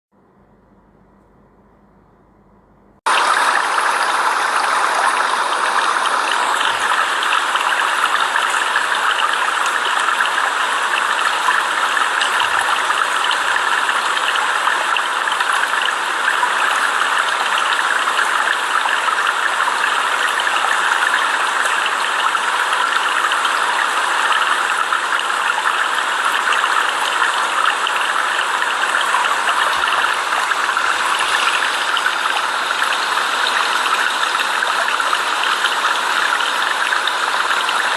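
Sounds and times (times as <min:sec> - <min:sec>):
water rushing: 0:03.1 - 0:15.2, 0:27.8 - 0:37.9.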